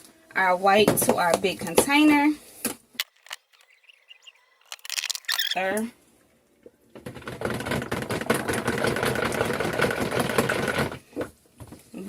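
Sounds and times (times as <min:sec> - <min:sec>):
stick blender running: 0:07.4 - 0:11.0.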